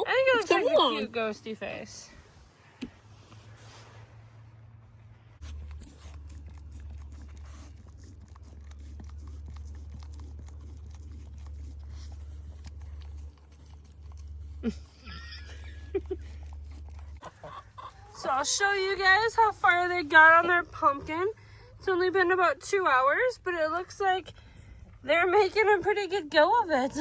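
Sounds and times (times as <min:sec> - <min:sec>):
steady low hum: 0:00.0 - 0:27.0
chickens clucking: 0:17.2 - 0:18.4.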